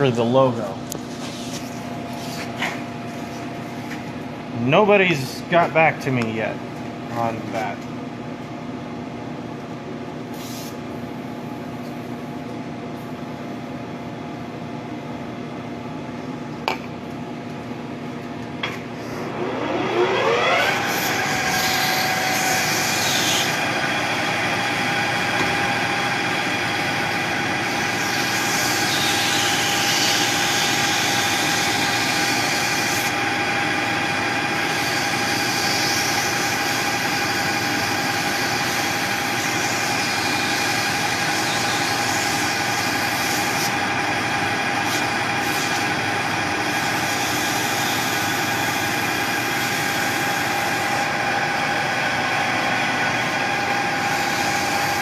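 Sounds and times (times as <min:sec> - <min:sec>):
metal lathe motor whine: 0:18.7 - 0:55.0.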